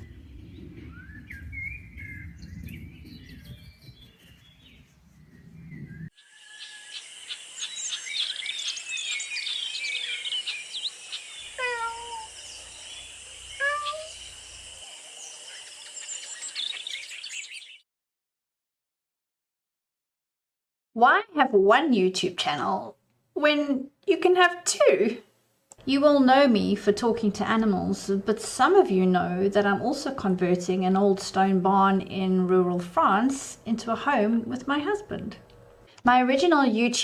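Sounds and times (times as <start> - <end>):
low rumble: 0.0 - 3.7
birds singing: 0.0 - 17.8
cat meowing: 11.6 - 12.3, 13.6 - 14.2.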